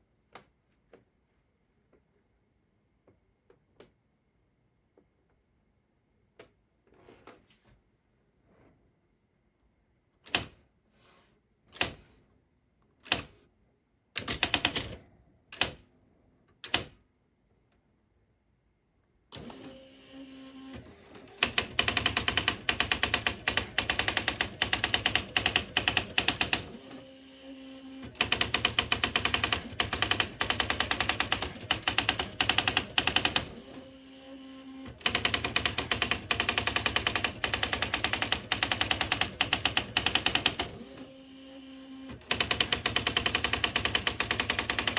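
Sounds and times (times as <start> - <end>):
fast typewriter typing runs: 14.2 - 15.0, 21.0 - 26.9, 28.0 - 33.8, 35.0 - 41.0, 42.2 - 44.9
typewriter motor humming: 21.0 - 27.0, 28.0 - 34.0, 34.9 - 41.2, 42.2 - 44.9.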